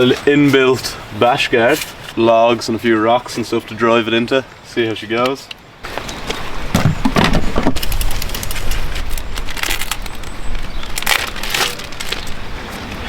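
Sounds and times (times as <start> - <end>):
plastic packaging crinkling and tearing: 7.7 - 12.5.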